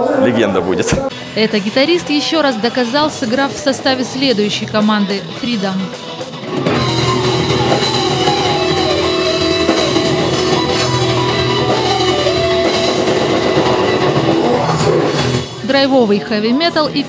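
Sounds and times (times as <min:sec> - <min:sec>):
heavy metal band playing: 0:01.1 - 0:17.0.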